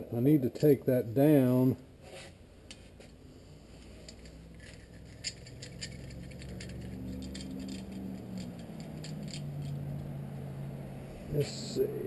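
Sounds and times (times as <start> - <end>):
low hum: 3.2 - 12.0
small metal parts clicking: 3.8 - 10.1.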